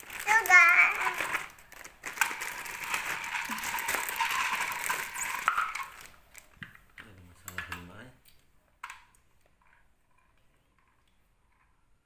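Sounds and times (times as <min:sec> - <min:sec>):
toy train motor whirring: 0:00.0 - 0:06.2.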